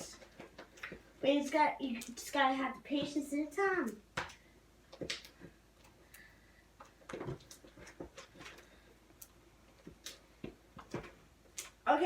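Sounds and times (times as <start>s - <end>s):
slime clicking and squelching: 3.7s - 11.8s.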